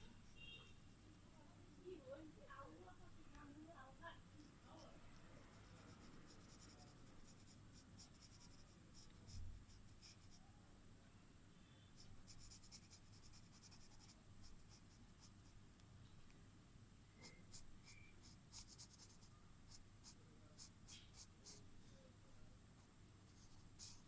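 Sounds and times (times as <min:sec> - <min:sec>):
pen scratching on paper: 0:04.6 - 0:10.4, 0:12.0 - 0:15.6, 0:17.2 - 0:21.6, 0:23.3 - 0:24.0.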